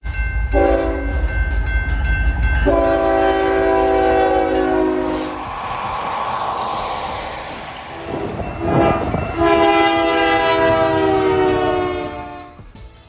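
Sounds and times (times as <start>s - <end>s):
low locomotive rumble: 0.0s - 12.8s
train wheel and rail noise: 0.0s - 13.0s
locomotive air horn: 0.5s - 1.3s, 2.6s - 5.4s, 8.2s - 12.7s.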